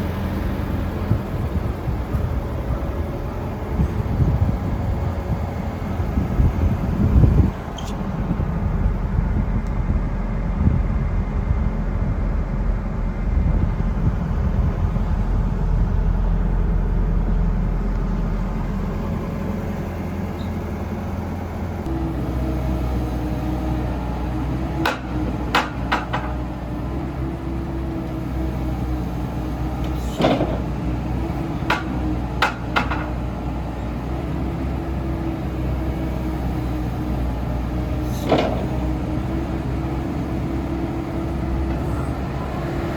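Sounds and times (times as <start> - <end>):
excavator engine running: 0.0 - 42.9
sharp metallic knocks: 24.8 - 26.5, 31.6 - 33.2.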